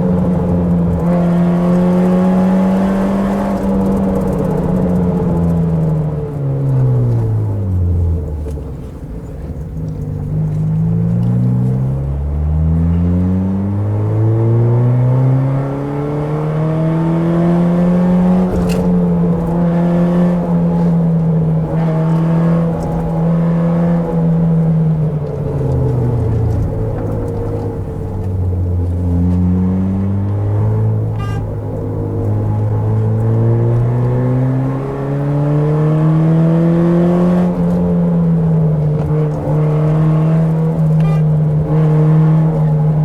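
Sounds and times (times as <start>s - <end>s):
car engine revving: 0.0s - 43.0s.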